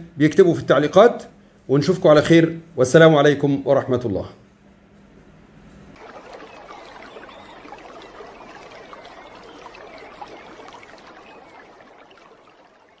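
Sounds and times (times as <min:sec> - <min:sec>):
running water trickling: 0:06.0 - 0:13.0.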